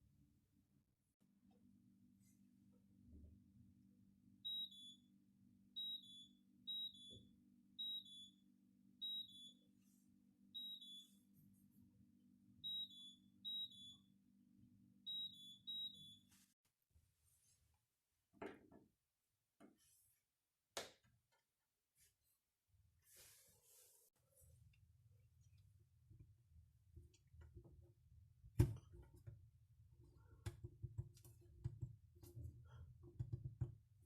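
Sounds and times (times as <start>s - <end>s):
dishwasher two-note beeps: 4.5s - 5.0s, 5.8s - 8.4s, 9.0s - 9.6s, 10.6s - 11.1s, 12.6s - 14.0s, 15.1s - 16.2s.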